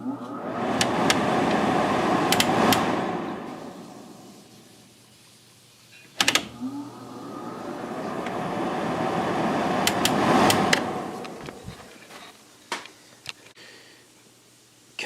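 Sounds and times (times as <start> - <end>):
air conditioner fan running: 0.0 - 15.0
switch clicks: 2.3 - 2.9.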